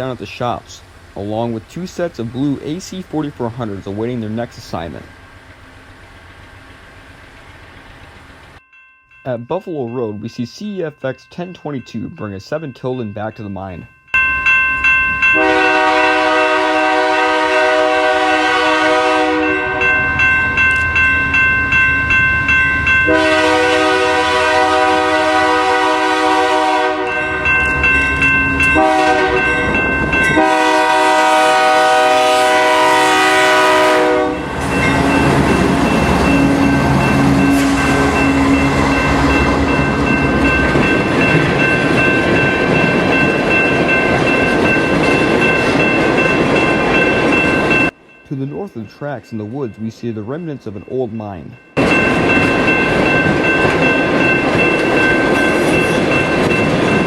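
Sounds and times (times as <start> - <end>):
train rumbling past: 0.0 - 11.8, 14.1 - 57.0
locomotive air horn blasts: 15.4 - 20.0, 23.1 - 27.5, 28.6 - 40.5.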